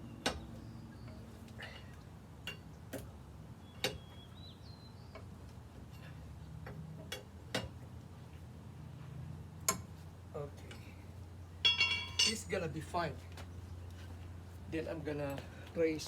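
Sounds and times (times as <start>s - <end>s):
steady low hum: 7.3s - 14.8s.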